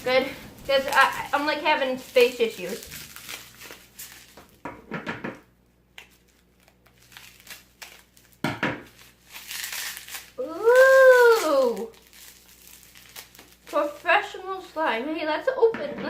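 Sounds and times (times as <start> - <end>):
packaging crinkling and rustling: 0.0 - 4.6, 5.9 - 14.8
girl saying ooh: 10.4 - 12.0.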